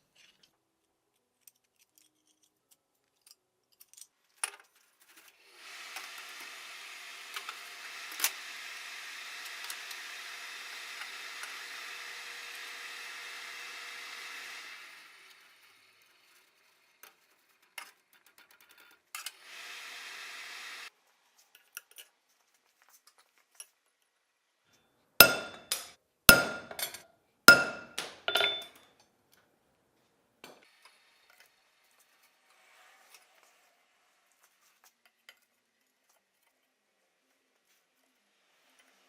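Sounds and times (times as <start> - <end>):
hammer striking metal: 25.2 - 28.7.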